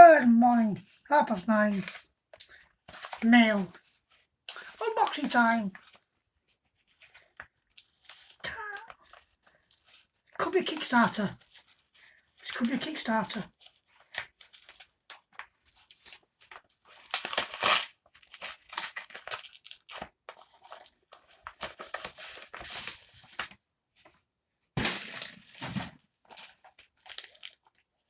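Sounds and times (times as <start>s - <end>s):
packaging tearing and rustling: 13.6s - 23.6s, 24.8s - 27.8s.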